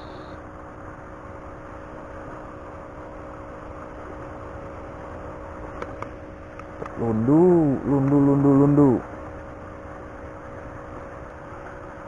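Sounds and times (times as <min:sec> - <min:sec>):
background hiss: 0:00.0 - 0:00.4
distant motor hum: 0:00.0 - 0:00.4.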